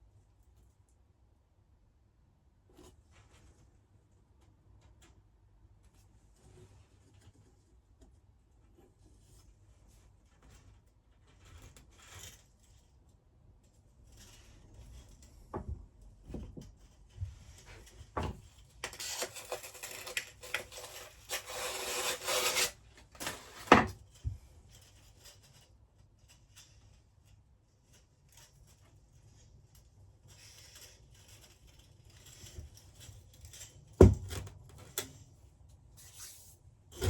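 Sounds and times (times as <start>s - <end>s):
metal scraping and rubbing: 19.0s - 23.7s.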